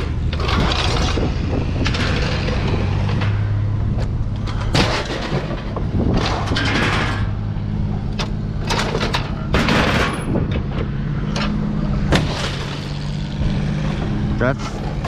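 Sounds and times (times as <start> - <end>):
engine humming: 0.0 - 15.0
scrap metal crashing and clattering: 4.4 - 7.4, 8.6 - 10.4, 12.1 - 13.1.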